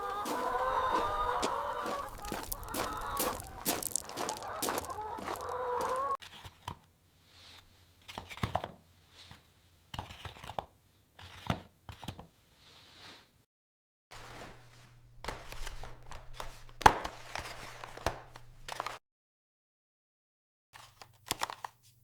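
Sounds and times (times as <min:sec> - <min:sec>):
chickens clucking: 0:00.0 - 0:06.2.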